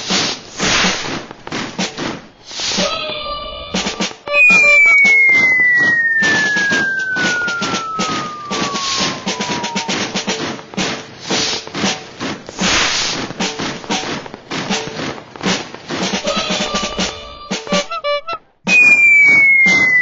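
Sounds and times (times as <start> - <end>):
fast patter of drum hits: 0.0 - 20.0
whistle sliding down in pitch: 4.3 - 10.3, 17.6 - 20.0.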